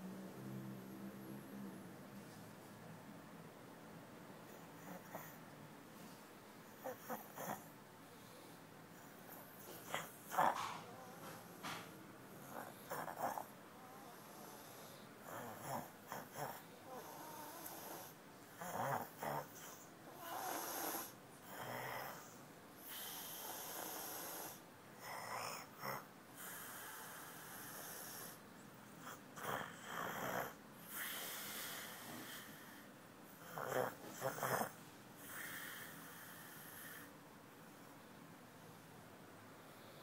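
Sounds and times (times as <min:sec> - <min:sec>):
person snoring: 0:12.4 - 0:22.3, 0:33.4 - 0:37.1.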